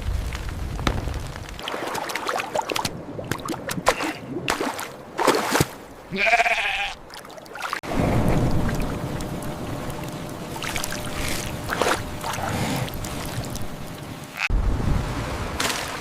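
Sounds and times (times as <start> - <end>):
water splashes: 1.4 - 16.0
farm animal bleating: 6.1 - 7.0.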